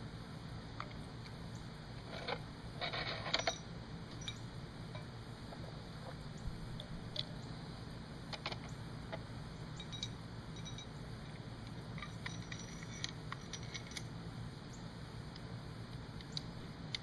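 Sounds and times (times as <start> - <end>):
low steady hum: 0.0 - 17.0
small metal parts clinking: 2.1 - 5.1, 9.8 - 11.0, 11.9 - 14.1.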